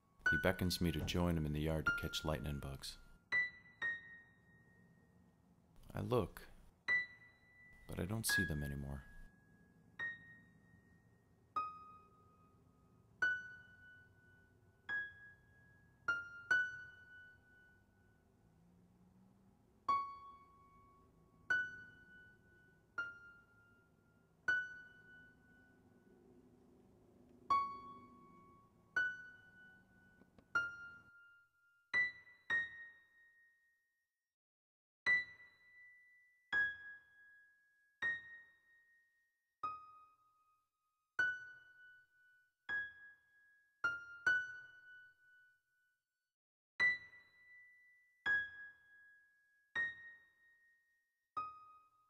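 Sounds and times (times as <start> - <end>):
slow piano notes: 0.0 - 33.5
slow sparse piano notes: 19.8 - 33.0.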